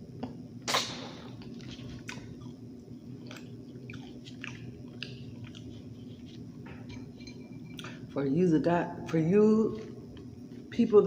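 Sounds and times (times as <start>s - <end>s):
wet mouth smacks: 0.2s - 6.4s
person chewing food: 1.2s - 8.1s, 9.8s - 10.7s.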